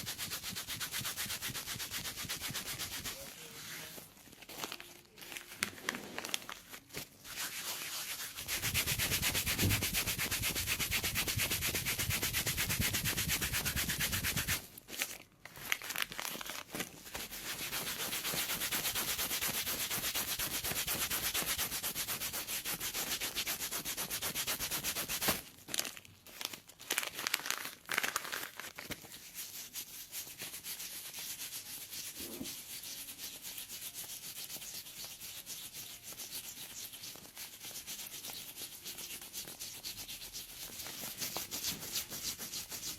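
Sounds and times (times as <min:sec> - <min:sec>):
pedicure tool scraping skin: 0:00.0 - 0:04.0, 0:07.2 - 0:14.7, 0:17.1 - 0:25.4, 0:29.1 - 0:42.9.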